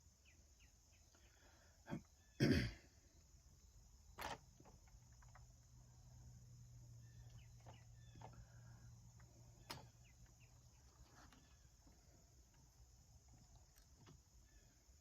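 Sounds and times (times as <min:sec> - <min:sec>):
faint clicks and ticks: 0:07.2 - 0:14.5.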